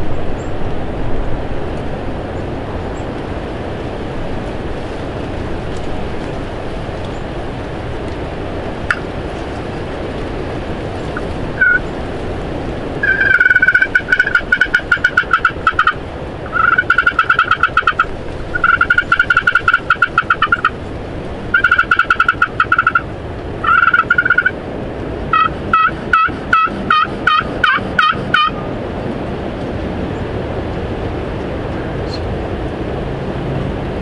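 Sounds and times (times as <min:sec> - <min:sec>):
steady rushing background noise: 0:00.0 - 0:34.0
turkey hen clucking: 0:11.6 - 0:11.8, 0:13.0 - 0:20.8, 0:21.5 - 0:24.6, 0:25.3 - 0:28.6
turkey hen yelps: 0:11.6 - 0:11.8, 0:13.0 - 0:20.7, 0:21.5 - 0:23.0, 0:23.6 - 0:24.6, 0:25.3 - 0:28.6.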